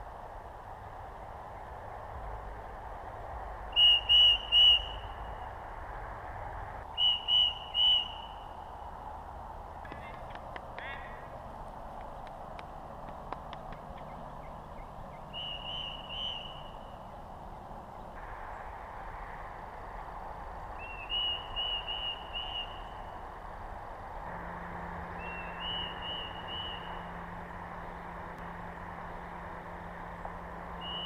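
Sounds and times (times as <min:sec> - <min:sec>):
outdoor background noise: 0:00.0 - 0:31.0
bird chirping: 0:03.7 - 0:05.4, 0:07.0 - 0:08.6, 0:13.5 - 0:18.2, 0:20.6 - 0:23.2, 0:24.8 - 0:31.0.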